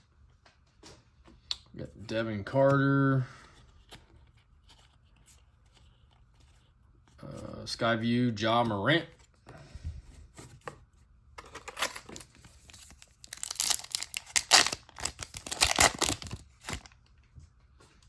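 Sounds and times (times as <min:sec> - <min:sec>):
plastic wrapper tearing and crinkling: 0:11.4 - 0:17.0.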